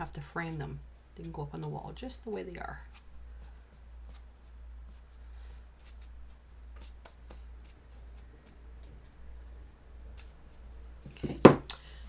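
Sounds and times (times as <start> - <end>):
brush stroking canvas: 0.0 - 9.5
low steady hum: 0.0 - 12.0.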